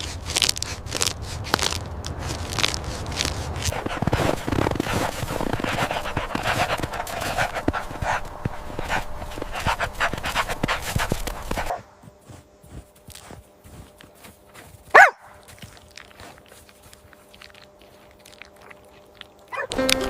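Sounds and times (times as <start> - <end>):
puppy panting: 3.1 - 11.8.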